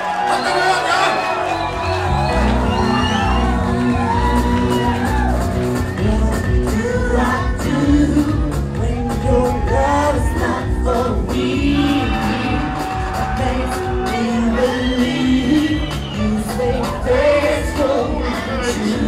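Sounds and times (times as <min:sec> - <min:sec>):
electronic pop music: 0:00.0 - 0:19.0
person singing: 0:05.6 - 0:19.0.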